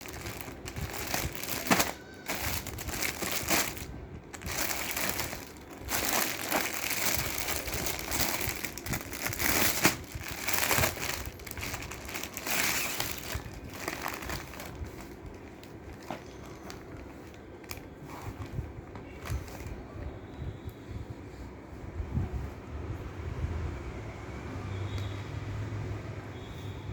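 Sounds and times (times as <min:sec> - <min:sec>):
packaging crinkling and rustling: 0:00.0 - 0:20.0.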